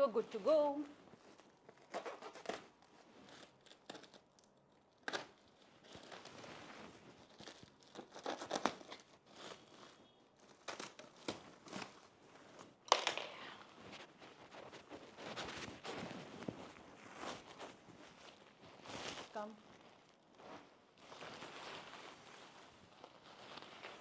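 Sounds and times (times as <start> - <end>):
packaging crinkling: 1.2 - 24.0
packing tape tearing: 1.7 - 6.4, 7.2 - 9.7, 10.5 - 12.1.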